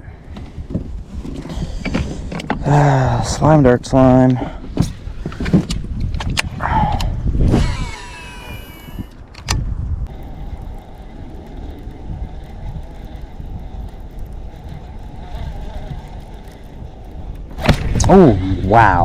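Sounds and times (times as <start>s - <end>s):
low rumbling noise: 6.5s - 19.0s
fishing reel spool whining: 7.5s - 9.3s, 10.1s - 18.8s.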